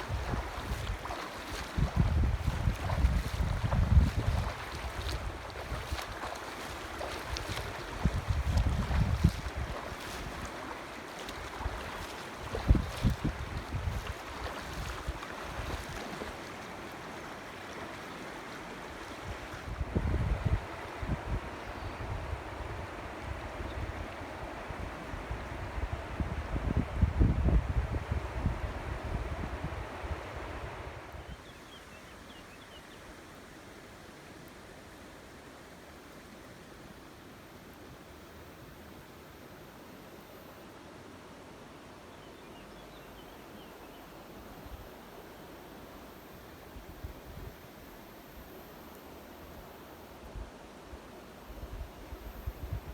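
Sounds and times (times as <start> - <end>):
wind buffeting microphone: 0.0 - 10.6, 11.3 - 16.3, 19.3 - 24.1, 24.8 - 31.3
river water rushing: 0.0 - 19.6.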